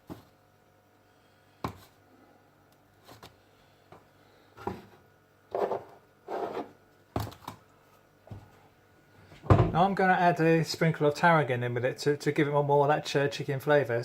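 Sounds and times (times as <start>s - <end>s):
rustling or scraping: 5.5s - 6.8s
knocks on a worktop: 9.5s - 9.8s.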